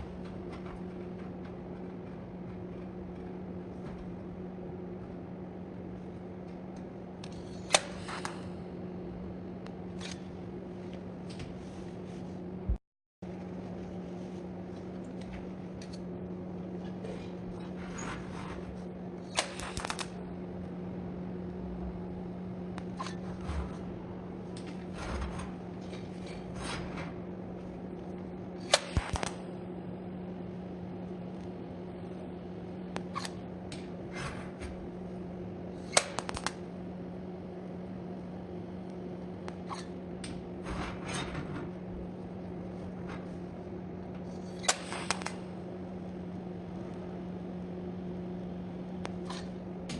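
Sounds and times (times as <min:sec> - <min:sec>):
steady low hum: 0:00.0 - 0:49.9.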